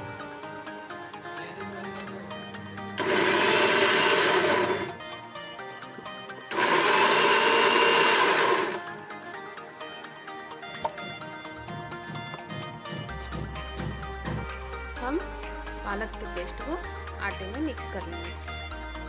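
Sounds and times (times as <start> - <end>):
mixer grinder running: 3.0 - 5.0, 6.5 - 8.9.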